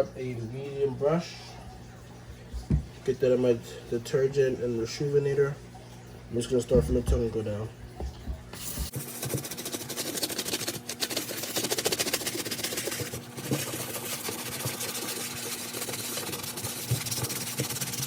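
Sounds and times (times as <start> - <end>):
brush scrubbing a sneaker: 8.6 - 18.0.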